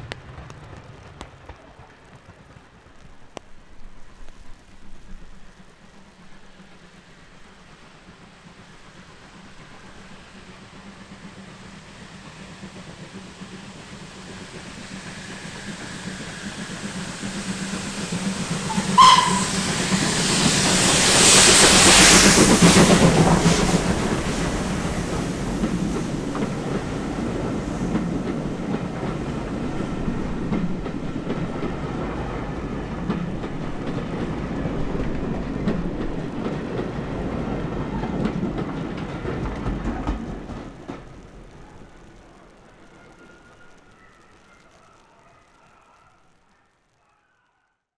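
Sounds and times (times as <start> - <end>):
carriages running on rails: 0.0 - 46.7
steam train passing: 0.0 - 47.1
train whistle toot: 14.8 - 22.4.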